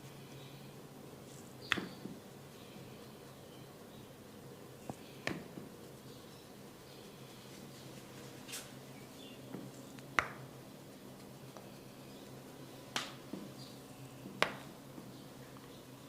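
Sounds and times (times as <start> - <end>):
sharp snapping cracks: 1.6 - 2.0, 12.9 - 13.2.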